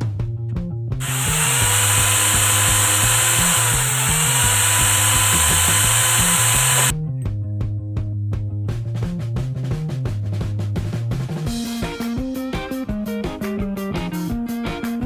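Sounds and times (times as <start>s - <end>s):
power tool whining: 1.0s - 6.9s
music with drum beat: 7.4s - 15.0s.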